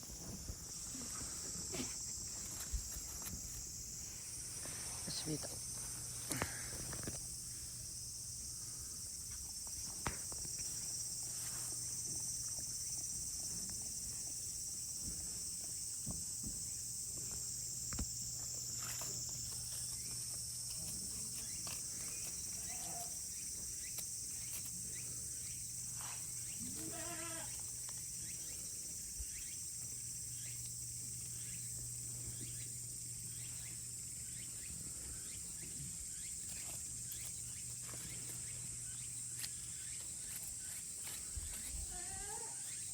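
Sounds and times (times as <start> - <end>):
low steady hum: 0.0 - 42.2
insects droning: 0.0 - 42.9
goat bleating: 26.7 - 27.6.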